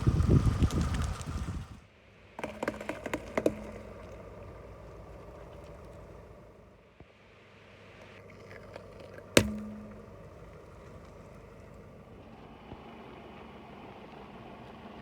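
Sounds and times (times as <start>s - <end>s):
objects crunching under car tyres: 8.0s - 12.8s.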